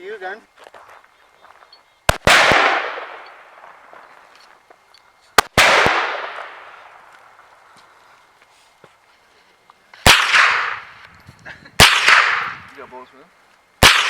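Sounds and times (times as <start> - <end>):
gunshots: 2.1 - 4.1, 5.4 - 7.0, 10.0 - 11.0, 11.8 - 12.7, 13.8 - 14.0.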